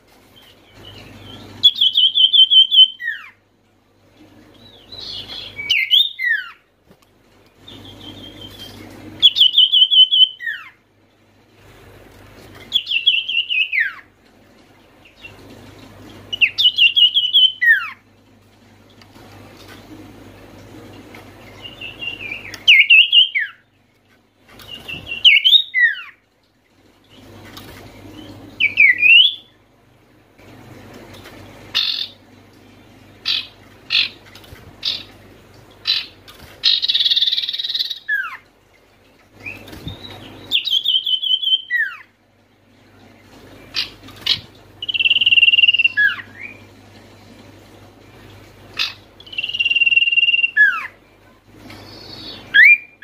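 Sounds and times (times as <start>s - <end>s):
bird whistling song: 0.9s - 3.4s, 4.6s - 6.6s, 7.7s - 10.8s, 12.7s - 14.0s, 16.3s - 18.0s, 21.6s - 23.6s, 24.6s - 26.2s, 28.2s - 29.6s, 39.4s - 42.1s, 44.8s - 46.7s, 48.8s - 51.0s, 51.7s - 53.0s.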